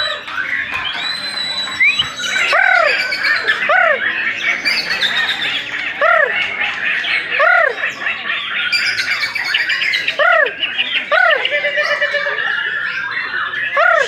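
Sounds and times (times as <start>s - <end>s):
loud whistled bird note: 0.0s - 3.5s
birds chirping and trilling: 0.0s - 14.0s.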